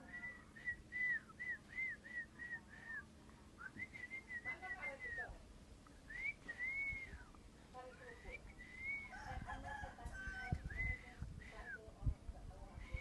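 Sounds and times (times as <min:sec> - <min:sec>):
myna bird whistling: 0:00.0 - 0:05.3, 0:06.0 - 0:07.4, 0:08.2 - 0:09.2, 0:12.8 - 0:13.0.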